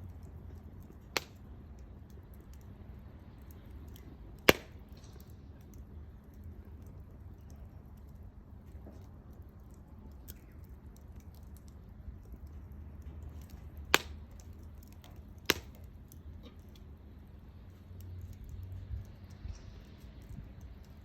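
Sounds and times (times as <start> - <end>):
low steady rumble: 0.0 - 21.0
wood fire crackling: 0.0 - 21.0
sharp fire pops: 0.2 - 2.8, 3.4 - 5.9, 13.2 - 16.8.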